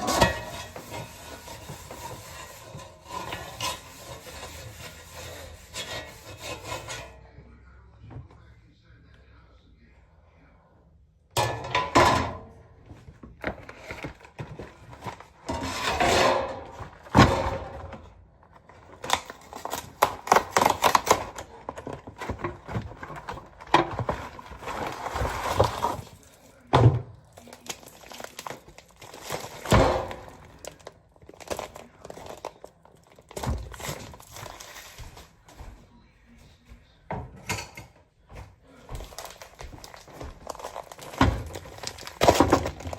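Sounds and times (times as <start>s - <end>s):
packaging crinkling and rustling: 13.3s - 15.6s, 16.7s - 35.5s, 38.9s - 42.9s.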